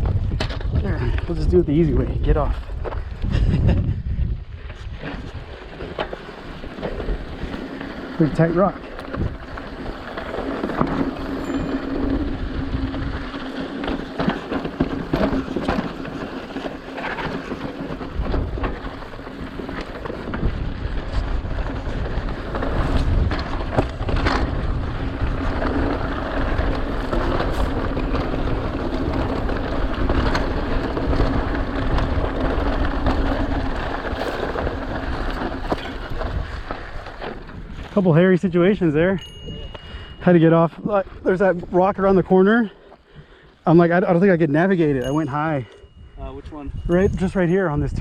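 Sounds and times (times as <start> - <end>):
wind on microphone: 0.0 - 5.8, 18.0 - 38.0, 45.0 - 48.0
bike clicks and rattles: 0.0 - 48.0.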